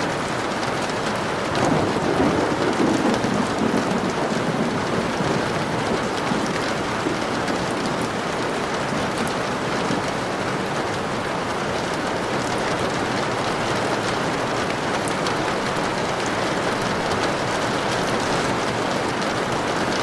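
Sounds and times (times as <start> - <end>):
steady rain falling: 0.0 - 20.0
thunder rumbling: 1.5 - 10.1.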